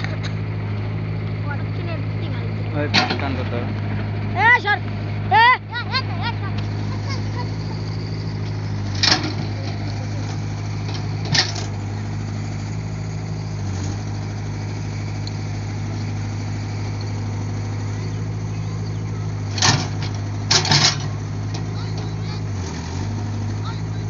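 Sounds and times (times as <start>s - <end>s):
excavator engine running: 0.0s - 24.0s
sharp metal clanks: 2.8s - 3.6s, 8.8s - 11.7s, 19.5s - 22.1s.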